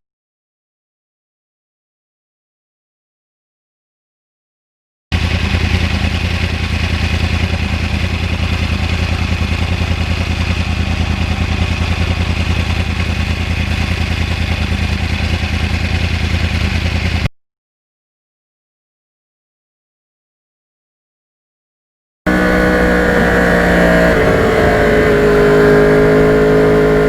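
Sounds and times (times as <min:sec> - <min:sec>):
motorcycle engine running: 0:05.1 - 0:17.3, 0:22.3 - 0:27.0.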